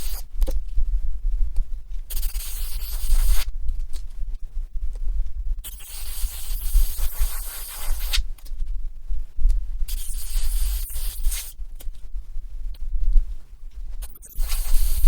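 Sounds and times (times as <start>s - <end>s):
airbrush spraying hiss: 0.0s - 0.3s, 2.1s - 3.5s, 5.6s - 8.2s, 9.9s - 11.6s, 14.0s - 15.0s
steady low hum: 0.0s - 15.0s.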